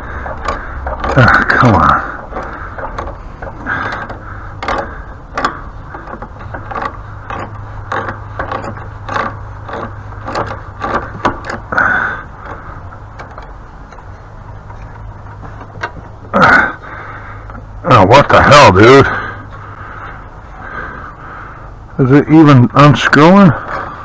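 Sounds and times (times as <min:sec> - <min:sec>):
metal scraping on metal: 0:00.0 - 0:15.5
steady low hum: 0:00.0 - 0:24.0.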